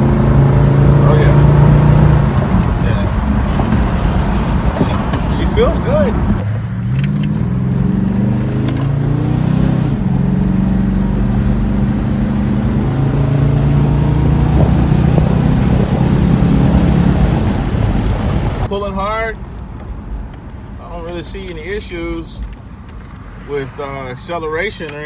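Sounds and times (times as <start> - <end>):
car engine accelerating hard: 0.0 - 18.7.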